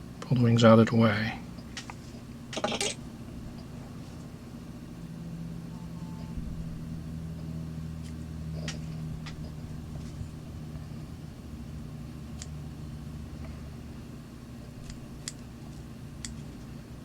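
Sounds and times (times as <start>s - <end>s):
low mechanical hum: 0.0s - 17.0s
scissors snipping: 14.8s - 15.4s.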